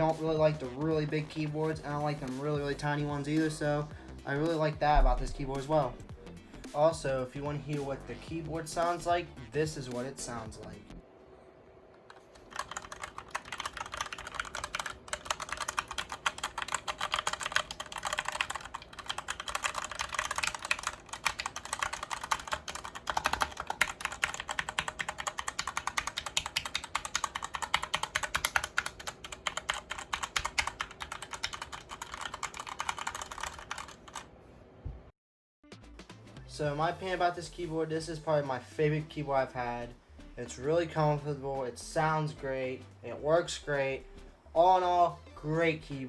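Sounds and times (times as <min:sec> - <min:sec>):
mechanical keyboard typing: 0:12.1 - 0:34.3.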